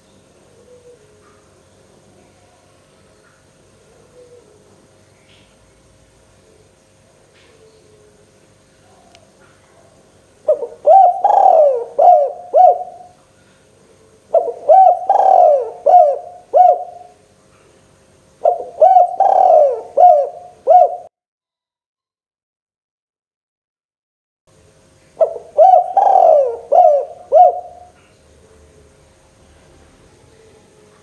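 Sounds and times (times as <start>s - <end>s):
dove cooing: 0.5s - 1.5s, 3.8s - 4.9s, 7.4s - 13.2s, 13.9s - 17.2s, 18.4s - 21.1s, 25.2s - 29.0s.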